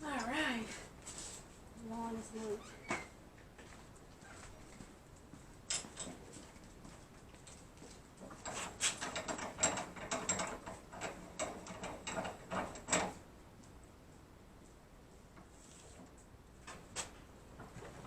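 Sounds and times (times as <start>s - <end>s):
metallic clicks and rattles: 8.2s - 13.2s.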